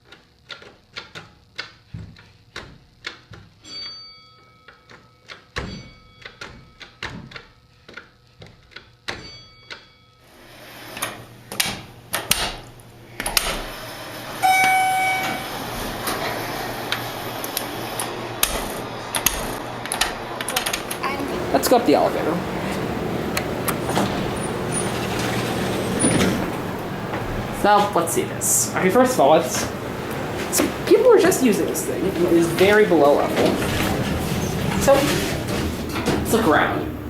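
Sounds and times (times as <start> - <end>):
continuous background noise: 11.0 - 37.0
short pitched chime: 14.4 - 15.5
faint steady high tone: 14.4 - 15.6.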